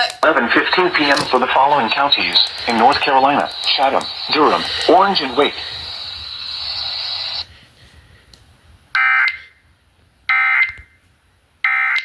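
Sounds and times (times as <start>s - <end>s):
radio hiss: 0.3s - 8.0s
digital data tone bursts: 1.6s - 7.4s.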